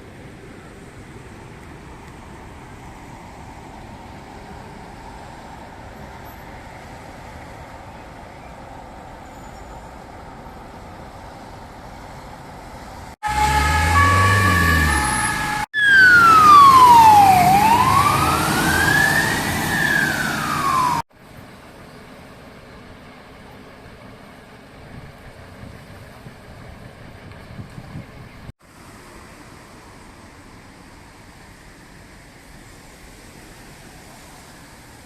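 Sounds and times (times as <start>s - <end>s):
emergency vehicle siren: 13.2s - 21.1s.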